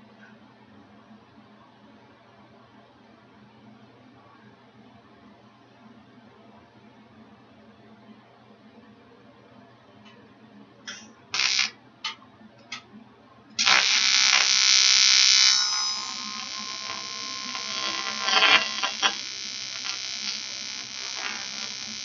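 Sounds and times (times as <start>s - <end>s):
short electrical blips: 10.9s - 11.7s, 13.6s - 22.0s
welding arc buzzing: 10.9s - 11.7s, 13.6s - 22.0s.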